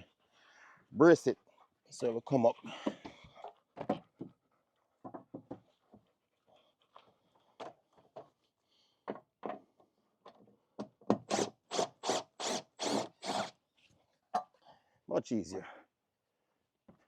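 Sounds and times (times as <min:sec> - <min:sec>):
screw scraping out of wood: 0:11.3 - 0:13.6.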